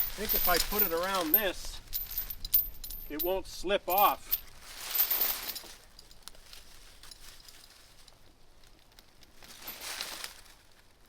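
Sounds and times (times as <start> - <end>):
heavy chain rattling: 0.0 - 6.2
rustling and handling noise: 0.0 - 11.0.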